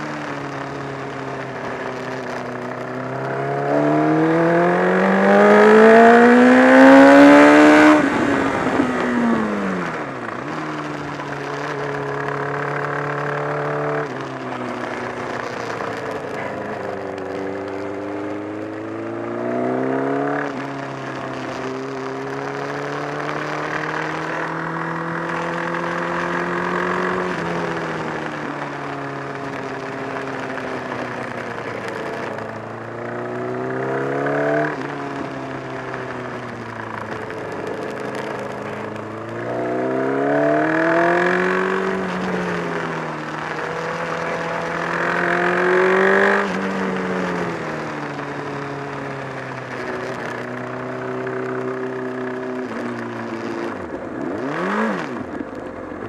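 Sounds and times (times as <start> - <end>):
motorcycle engine revving: 0.0 - 56.0
flapping battering engine noise: 24.2 - 56.0.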